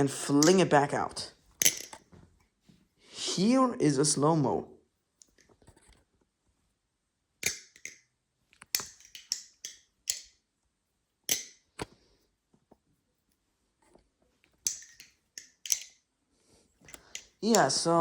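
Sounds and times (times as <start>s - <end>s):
knife handles clacking: 0.4s - 0.7s, 1.6s - 2.0s, 8.7s - 10.3s, 14.6s - 16.0s, 16.8s - 18.0s.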